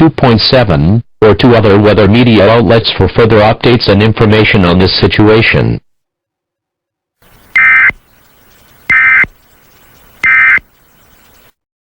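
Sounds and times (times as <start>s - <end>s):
digital data tone bursts: 7.2s - 11.6s
faint hiss: 7.2s - 11.6s.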